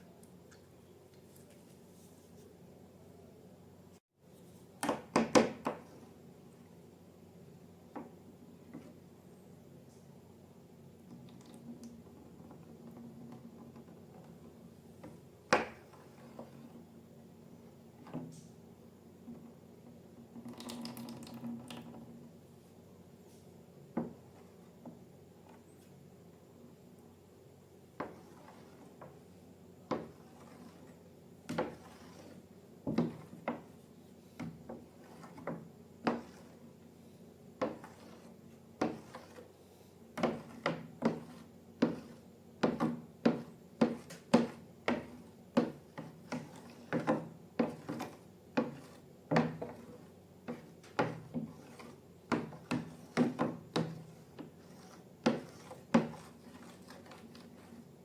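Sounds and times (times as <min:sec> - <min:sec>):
hard objects tapping and knocking: 0:32.8 - 0:33.8, 0:40.2 - 0:54.6.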